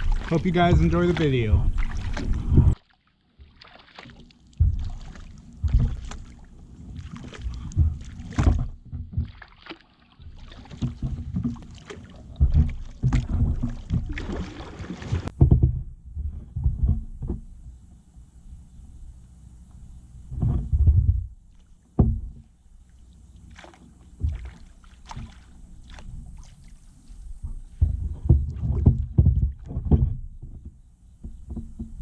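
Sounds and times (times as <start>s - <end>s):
paddle splashing into water: 0.0s - 15.9s, 20.3s - 32.0s.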